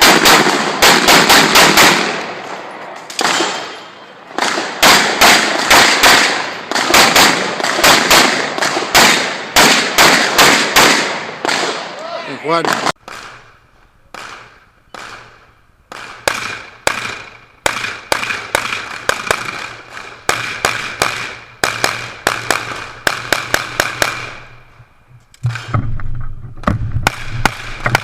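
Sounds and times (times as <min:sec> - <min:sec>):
pistol shots: 0:00.0 - 0:12.0, 0:14.1 - 0:24.5.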